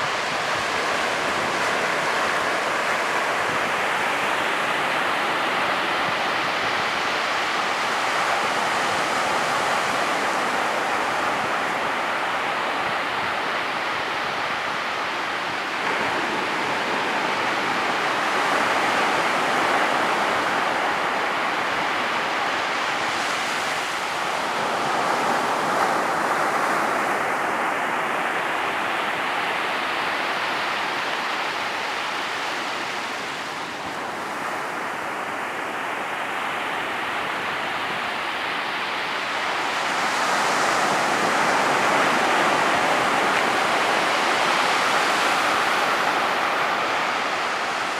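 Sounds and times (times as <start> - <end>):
ocean waves breaking: 0.0 - 13.3, 15.7 - 47.9.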